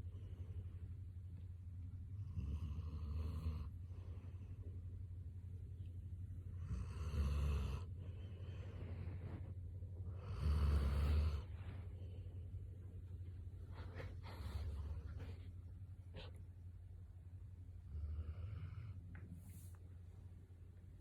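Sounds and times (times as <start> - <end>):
quiet dog breathing: 0.0 - 16.8, 17.7 - 20.4
dog snoring: 2.2 - 3.8, 6.6 - 11.6, 17.9 - 19.0.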